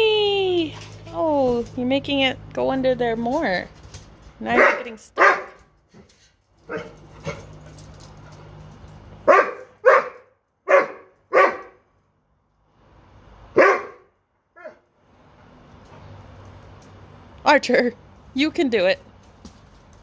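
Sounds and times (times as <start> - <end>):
dog barking: 4.6 - 5.6, 6.7 - 7.0, 9.2 - 11.8, 13.5 - 14.8.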